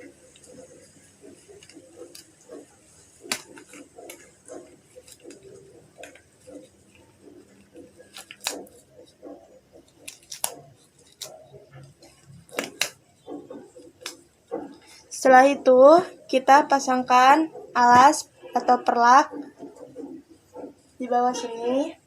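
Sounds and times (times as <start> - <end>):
rubber gloves rustling: 0.0 - 22.0
glove snaps: 3.2 - 4.3, 12.5 - 13.0, 13.9 - 14.2.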